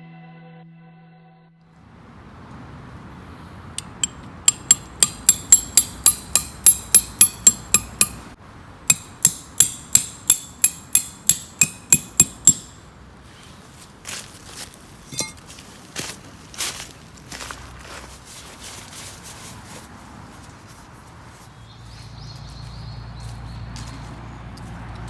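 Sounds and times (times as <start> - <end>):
hammer striking metal: 3.8 - 12.8, 15.1 - 15.4.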